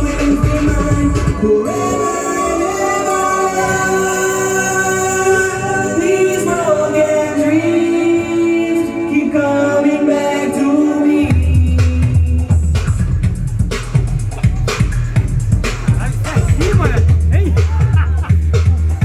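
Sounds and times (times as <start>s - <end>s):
heavy bass beat: 0.0s - 1.7s, 11.2s - 19.0s.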